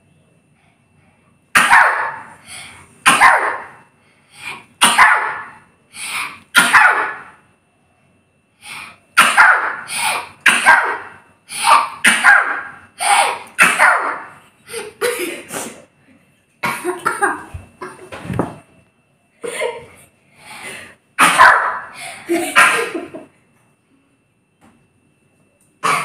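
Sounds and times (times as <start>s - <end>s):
loud sneezes: 1.5s - 2.4s, 3.0s - 3.8s, 4.4s - 7.4s, 9.2s - 14.3s, 15.0s - 15.9s, 21.2s - 23.1s
person coughing: 14.7s - 15.8s, 16.6s - 18.0s, 21.2s - 23.3s.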